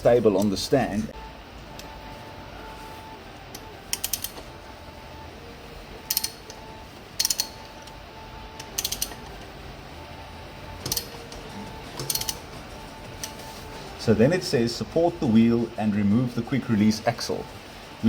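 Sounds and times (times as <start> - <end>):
ratchet wrench clicking: 3.5 - 4.5, 6.1 - 6.6, 7.2 - 8.0, 8.6 - 9.5, 10.8 - 11.4, 12.0 - 12.4.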